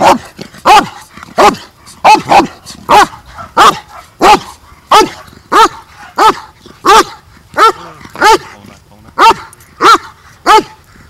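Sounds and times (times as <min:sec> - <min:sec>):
dog barking: 0:00.0 - 0:08.6, 0:09.2 - 0:10.8.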